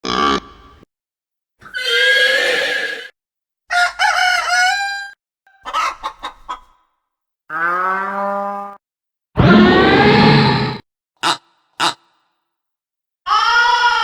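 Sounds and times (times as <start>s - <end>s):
rooster crowing: 3.7s - 5.2s
chicken clucking: 3.7s - 6.8s.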